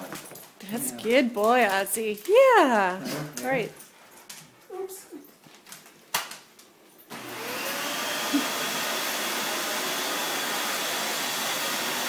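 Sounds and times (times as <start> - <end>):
vacuum cleaner motor running: 7.1 - 12.0.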